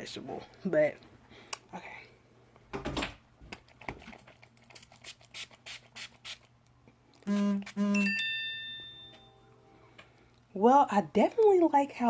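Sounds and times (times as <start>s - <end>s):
spray bottle spritzing: 4.8s - 6.5s, 7.3s - 8.1s
high ringing chime: 7.8s - 9.7s.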